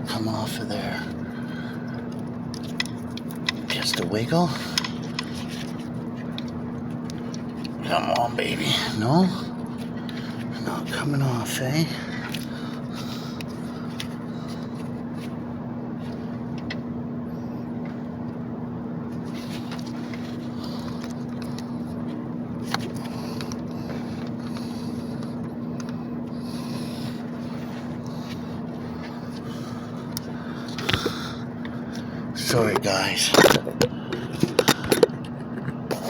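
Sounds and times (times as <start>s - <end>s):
steady mechanical hum: 0.0s - 36.0s.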